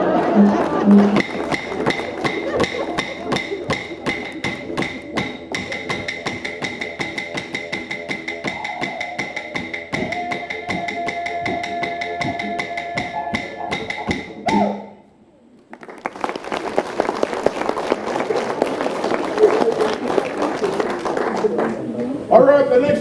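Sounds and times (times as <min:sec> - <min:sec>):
didgeridoo drone: 0:00.0 - 0:15.3
clapsticks beating: 0:00.8 - 0:14.8
higher held note: 0:08.5 - 0:15.1.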